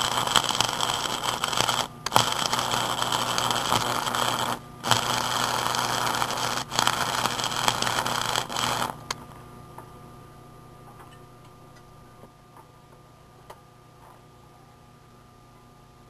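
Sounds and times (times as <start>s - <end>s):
low hum: 0.0s - 12.3s
welding arc crackle and hiss: 0.0s - 12.3s.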